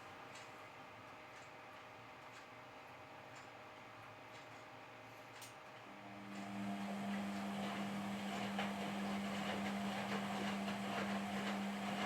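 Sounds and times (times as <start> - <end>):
washing machine hum: 2.8 - 12.0.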